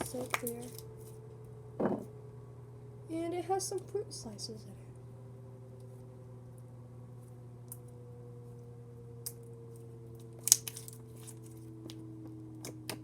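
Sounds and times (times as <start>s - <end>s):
steady low hum: 0.0s - 13.0s
slime clicking and popping: 10.4s - 11.0s.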